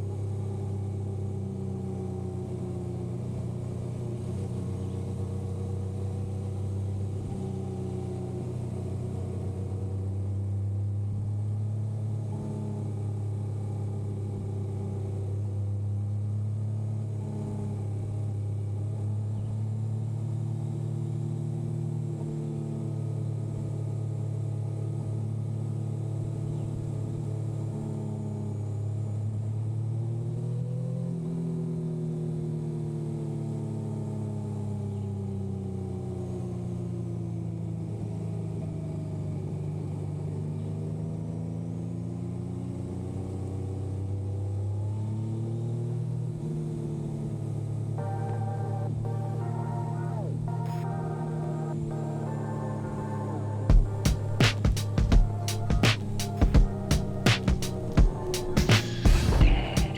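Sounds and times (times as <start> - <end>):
motorcycle engine running: 0.0 - 29.8, 50.3 - 59.9.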